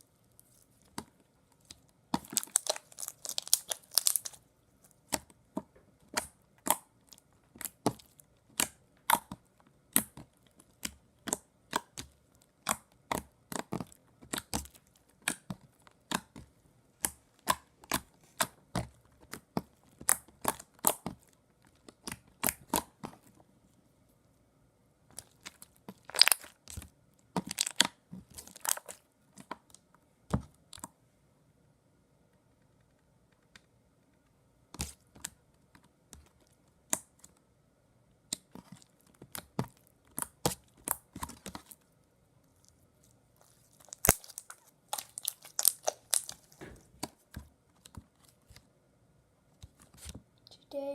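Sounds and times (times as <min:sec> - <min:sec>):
slime crackling and popping: 0:00.2 - 0:04.4, 0:06.1 - 0:23.2, 0:25.1 - 0:29.7, 0:38.3 - 0:41.8, 0:42.5 - 0:48.4.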